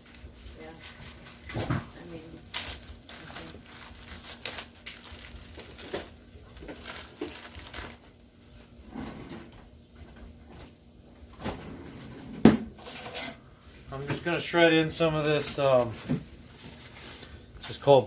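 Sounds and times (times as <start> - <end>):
packaging rustling: 2.5 - 8.1.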